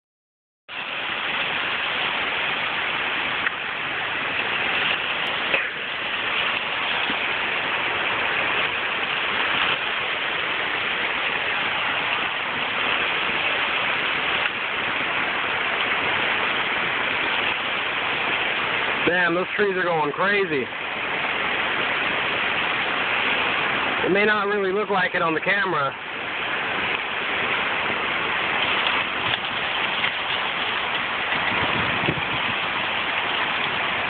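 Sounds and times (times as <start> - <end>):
strong wind rushing through trees: 0.7 - 34.0.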